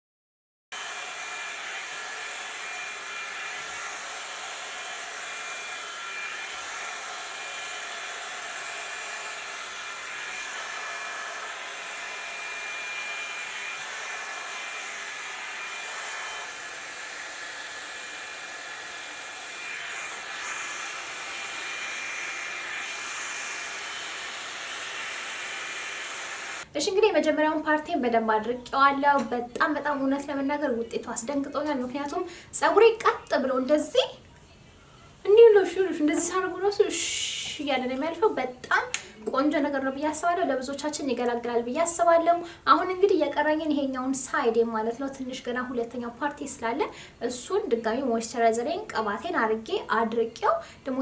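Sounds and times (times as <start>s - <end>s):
hot-air brush dryer whine and hiss: 0.8s - 26.7s.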